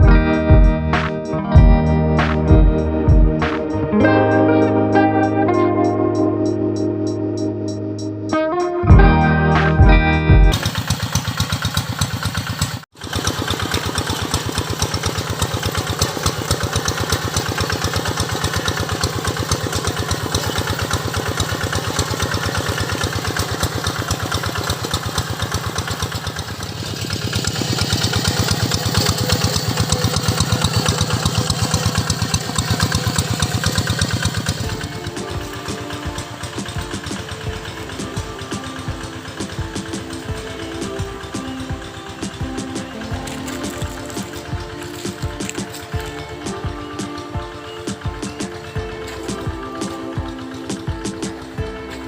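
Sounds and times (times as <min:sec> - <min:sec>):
hand tractor engine running: 0:10.5 - 0:52.0.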